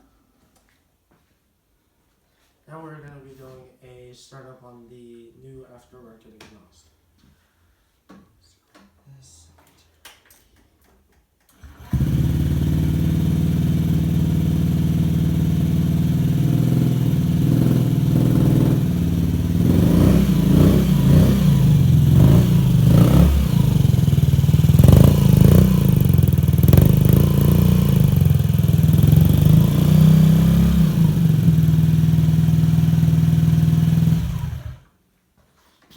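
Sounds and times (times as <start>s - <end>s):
scooter engine idling and revving: 11.6s - 34.9s.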